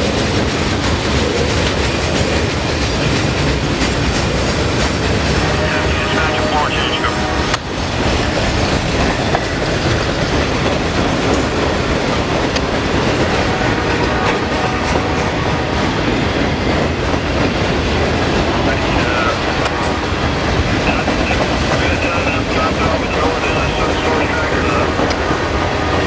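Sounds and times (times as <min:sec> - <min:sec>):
wheels clicking over rail joints: 0:00.0 - 0:05.7, 0:07.2 - 0:18.7
train passing: 0:00.0 - 0:26.0.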